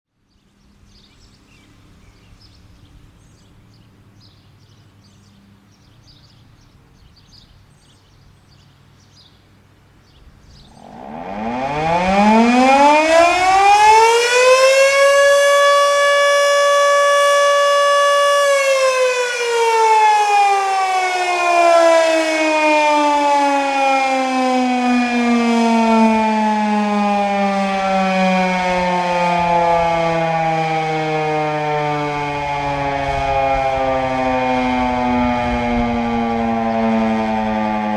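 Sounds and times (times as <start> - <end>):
outdoor warning siren winding: 10.7 - 37.9.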